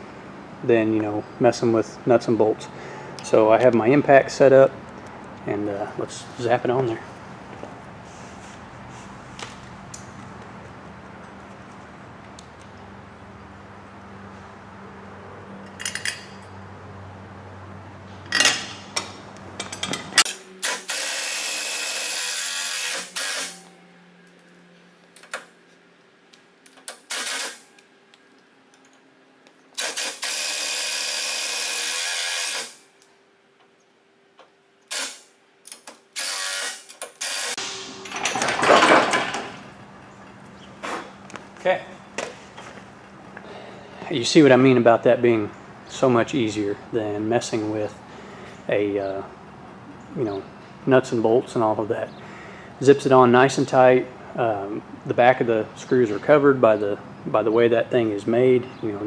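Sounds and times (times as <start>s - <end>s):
impact driver bursts and clicks: 26.9s - 27.6s, 29.8s - 32.8s, 36.0s - 37.6s
impact driver driving screws: 26.9s - 27.6s.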